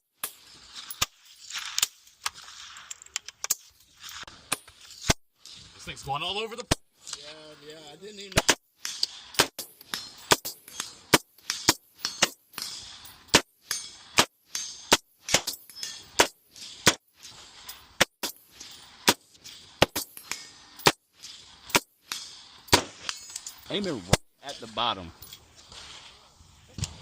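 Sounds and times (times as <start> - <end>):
rifle shots: 8.3 - 17.0, 19.0 - 23.2.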